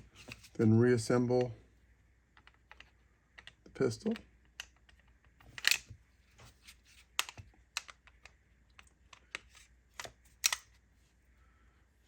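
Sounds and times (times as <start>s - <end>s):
pistol parts clicking: 2.3s - 5.9s, 7.1s - 10.7s.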